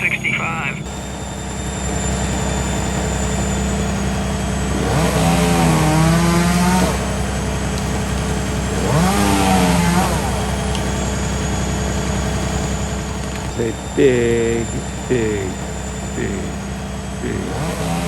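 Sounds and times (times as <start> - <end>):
chainsaw engine revving: 4.7 - 7.9, 8.7 - 10.8, 17.2 - 18.0.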